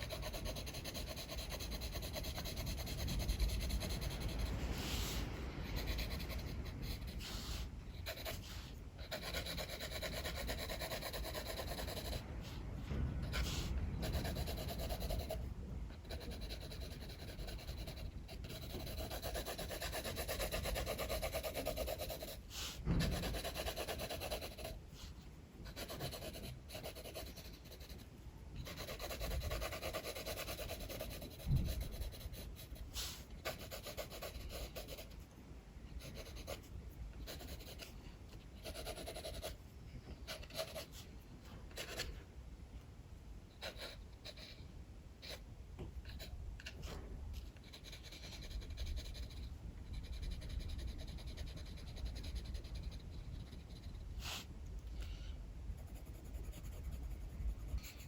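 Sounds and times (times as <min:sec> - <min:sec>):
pencil scratching on paper: 0:00.0 - 0:12.6, 0:13.2 - 0:35.3, 0:36.0 - 0:39.6, 0:40.2 - 0:41.1, 0:41.7 - 0:42.2, 0:43.6 - 0:44.6, 0:45.2 - 0:47.0, 0:47.6 - 0:54.5, 0:55.7 - 0:58.0
strong wind rumble: 0:01.9 - 0:17.6.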